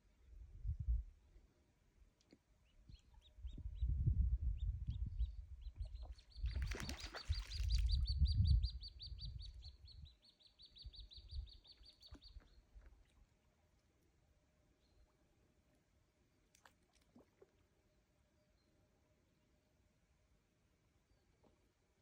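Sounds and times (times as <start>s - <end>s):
songbird chirping: 4.6s - 13.2s.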